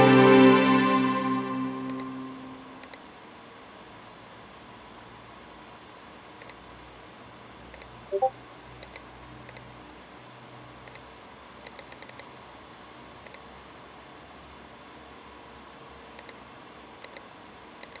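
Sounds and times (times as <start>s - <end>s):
short electronic chime: 0.0s - 2.8s
faint steady hum: 0.0s - 18.0s
computer mouse clicking: 2.8s - 3.0s, 6.4s - 6.6s, 7.7s - 8.0s, 8.8s - 9.7s, 10.8s - 12.3s, 13.2s - 13.5s, 16.2s - 16.4s, 17.0s - 18.0s.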